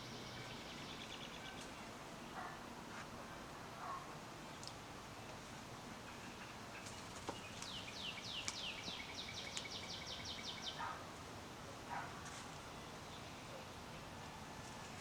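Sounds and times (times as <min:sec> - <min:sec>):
songbird singing: 0:00.0 - 0:01.9, 0:06.1 - 0:11.0, 0:12.7 - 0:14.2
outdoor background hiss: 0:00.0 - 0:15.0.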